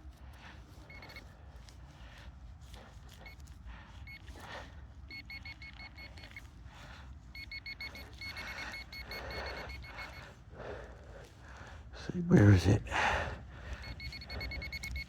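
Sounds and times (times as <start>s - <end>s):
metal detector beeping: 0.9s - 1.2s, 5.1s - 6.4s, 7.4s - 10.2s, 13.8s - 15.0s.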